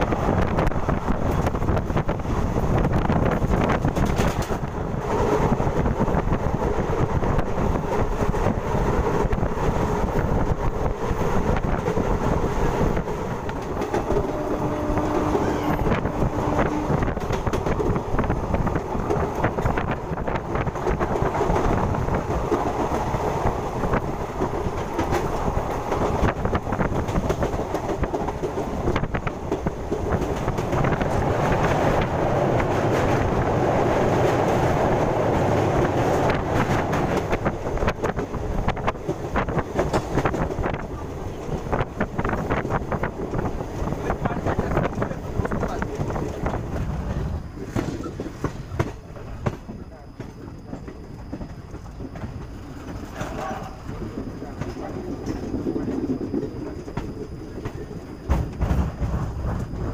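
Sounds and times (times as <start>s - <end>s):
train wheels rumbling on rails: 0.0s - 59.9s
track clicks and knocks: 2.8s - 5.2s, 15.0s - 23.1s, 41.5s - 59.9s.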